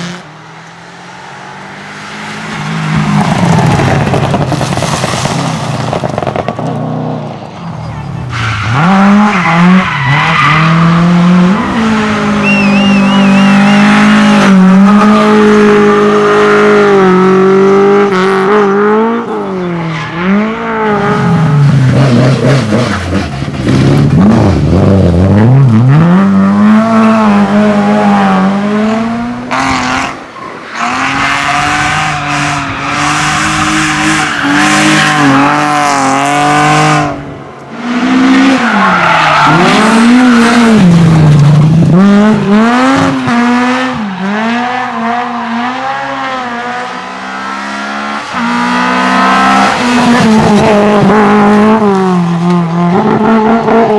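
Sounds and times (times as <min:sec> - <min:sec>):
rally car engine revving: 0:00.0 - 0:53.9
tyre squeal: 0:07.6 - 0:15.0.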